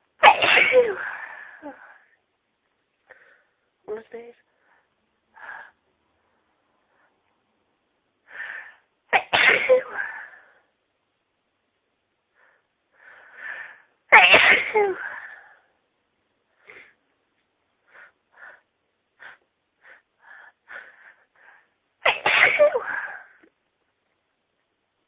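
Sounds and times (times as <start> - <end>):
person sneezing: 0.2 - 1.2, 9.2 - 10.2, 14.1 - 15.3, 22.0 - 23.2
faint breaths: 3.0 - 3.8, 4.4 - 7.5, 8.2 - 9.0, 12.3 - 14.1, 17.7 - 22.0.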